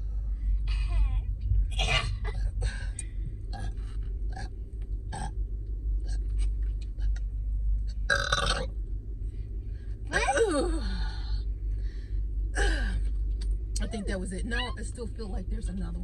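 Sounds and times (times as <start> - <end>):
steady low hum: 0.0 - 16.0
woman burping: 5.1 - 5.3, 8.1 - 8.7.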